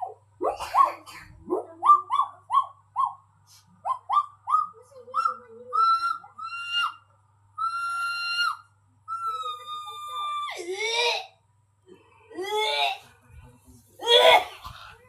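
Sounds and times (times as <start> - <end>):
person shrieking: 12.4 - 13.0, 14.0 - 14.9.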